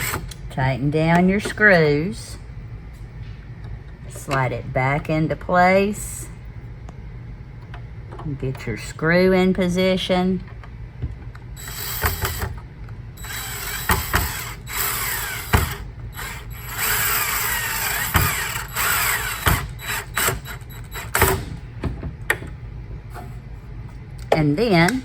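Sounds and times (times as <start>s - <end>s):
power screwdriver whirring: 11.6s - 12.5s, 13.2s - 21.3s.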